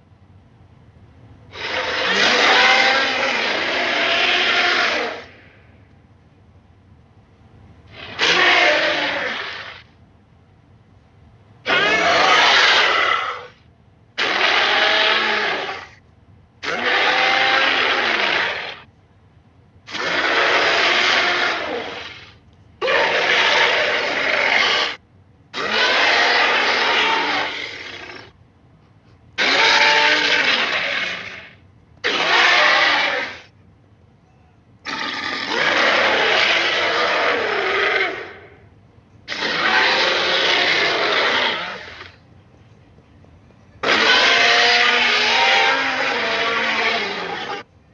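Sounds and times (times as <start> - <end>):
dinosaur roars: 1.5 - 5.4, 7.9 - 9.8, 11.7 - 13.6, 14.2 - 16.0, 16.6 - 18.8, 19.9 - 25.0, 25.6 - 28.3, 29.4 - 33.5, 34.9 - 38.5, 39.3 - 42.2, 43.8 - 47.6.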